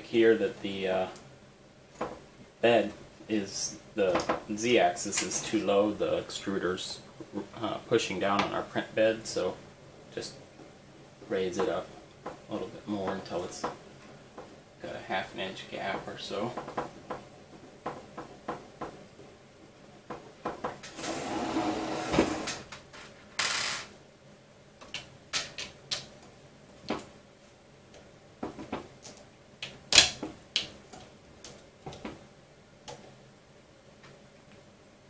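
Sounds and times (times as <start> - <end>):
hands clicking and tapping parts: 4.0 - 4.5, 24.8 - 27.1, 27.9 - 32.2.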